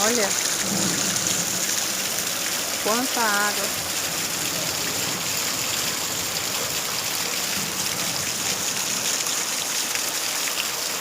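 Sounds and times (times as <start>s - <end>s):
heavy rain pouring: 0.0s - 11.0s.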